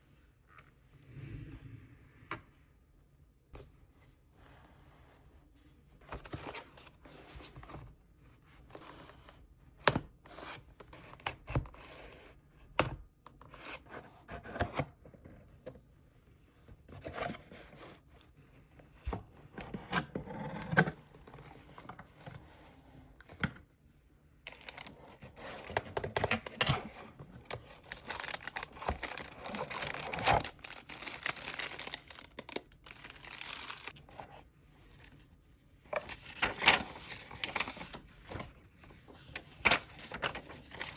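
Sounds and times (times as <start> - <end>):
packaging tearing and crinkling: 27.5 - 34.0.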